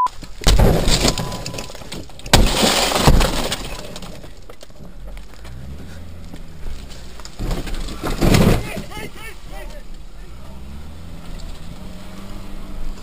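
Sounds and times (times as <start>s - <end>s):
sledgehammer smashing windscreen glass: 0.3s - 4.7s, 7.0s - 8.9s.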